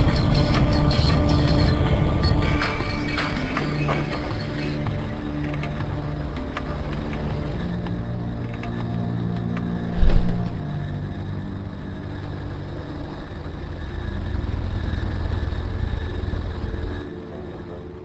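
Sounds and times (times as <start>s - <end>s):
aircraft engine droning: 0.0s - 18.0s
heavy thump: 10.0s - 10.5s.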